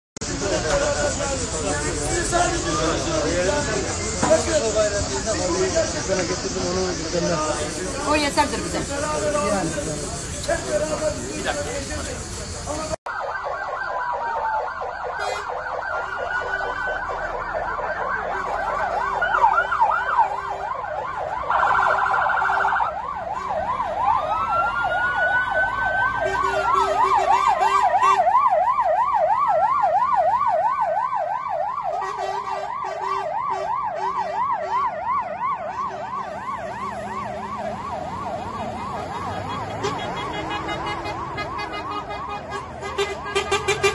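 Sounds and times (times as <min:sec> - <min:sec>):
fire engine sirens wailing: 0:00.2 - 0:43.9
siren blare: 0:13.1 - 0:43.9.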